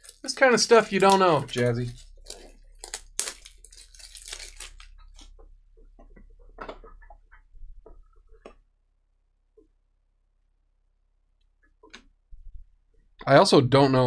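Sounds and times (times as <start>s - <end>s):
card wrapper crinkling: 0.0s - 5.5s.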